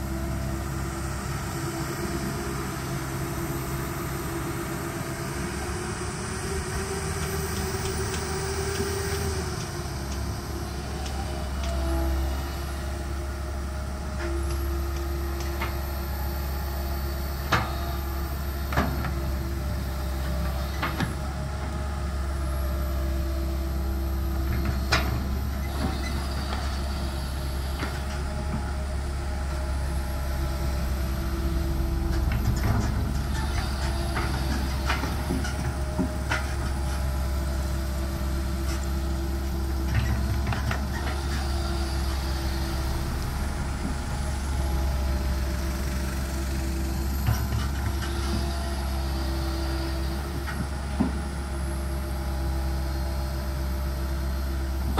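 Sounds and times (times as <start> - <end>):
excavator diesel engine running: 0.0 - 54.9
hydraulic whine: 22.4 - 54.9.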